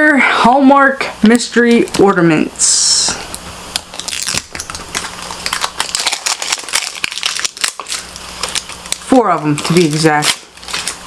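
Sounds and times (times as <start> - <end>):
packaging rustling and crinkling: 3.3 - 11.0.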